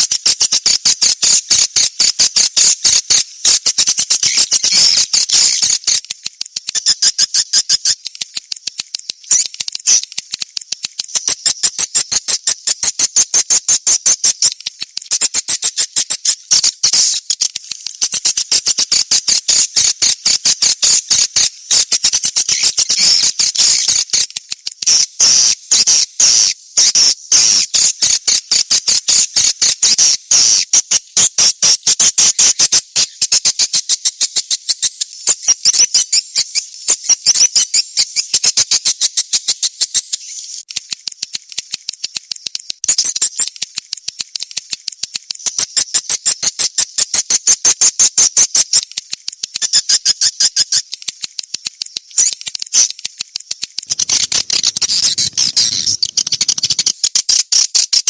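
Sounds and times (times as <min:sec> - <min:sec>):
swiftlet chirping twitter: 0:53.9 - 0:56.9.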